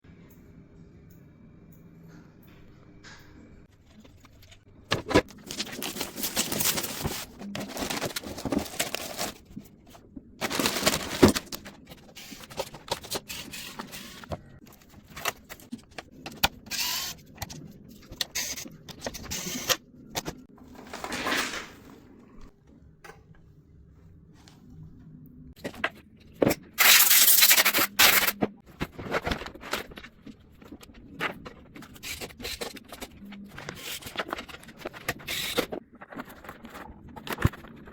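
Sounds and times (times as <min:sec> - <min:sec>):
scrapes clicks and rustles: 0:03.7 - 0:16.6, 0:26.8 - 0:37.9.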